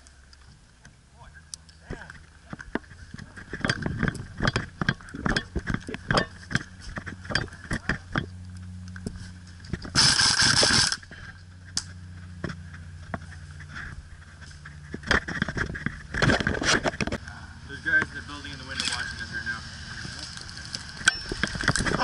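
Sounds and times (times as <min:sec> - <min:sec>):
sharp clicks and knocks: 0:00.3 - 0:11.0
airsoft gun burst: 0:10.0 - 0:11.0.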